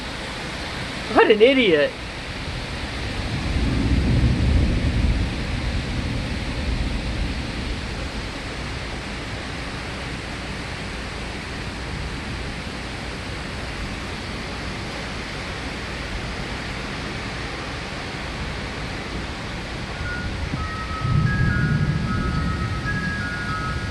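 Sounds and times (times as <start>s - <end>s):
wind rushing through trees: 0.0s - 23.9s
thunder rumbling: 2.3s - 9.6s, 19.8s - 23.9s.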